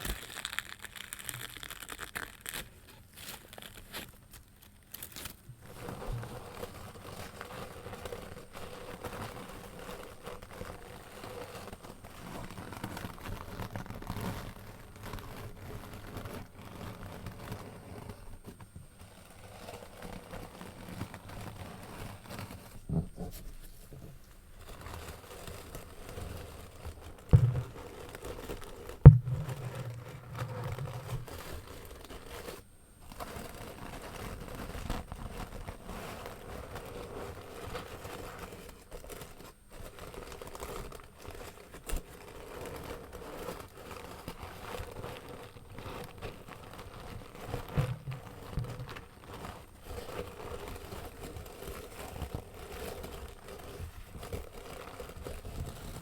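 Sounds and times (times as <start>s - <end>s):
crinkling and scratching object: 0.0s - 56.0s
sharp knocks: 27.4s - 27.9s, 29.0s - 31.3s, 47.8s - 49.0s.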